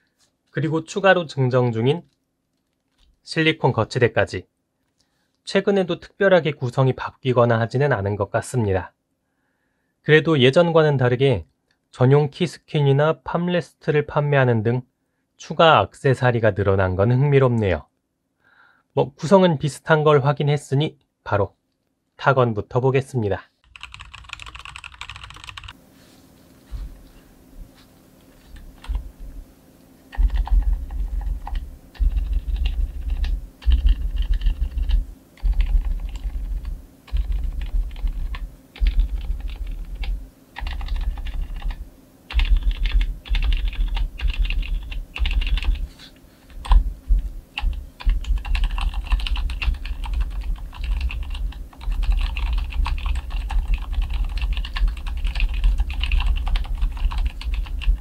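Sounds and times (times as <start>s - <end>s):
typing on mechanical keyboard: 23.6s - 25.8s, 30.1s - 45.8s, 47.6s - 58.0s.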